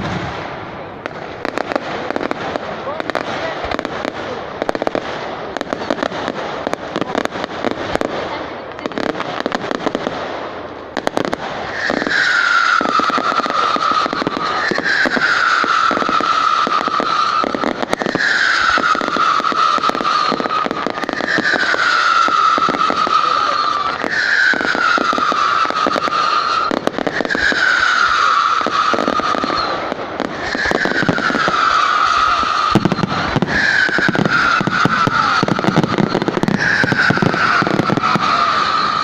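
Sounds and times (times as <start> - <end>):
fireworks crackling and popping: 0.0 - 39.0
high falling whistle: 11.7 - 39.0.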